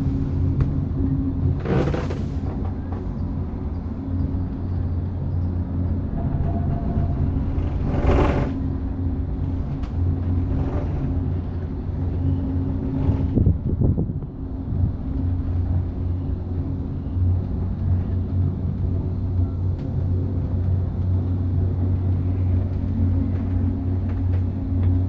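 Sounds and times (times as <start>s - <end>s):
wind noise: 0.0s - 19.6s
gondola cabin low hum: 0.0s - 25.0s.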